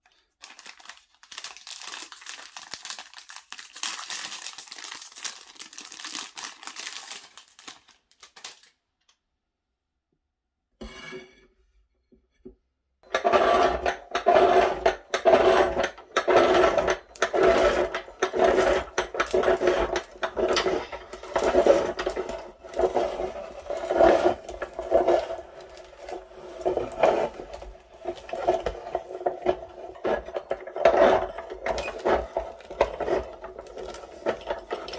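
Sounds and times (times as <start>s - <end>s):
electric meat grinder grinding: 13.0s - 34.9s.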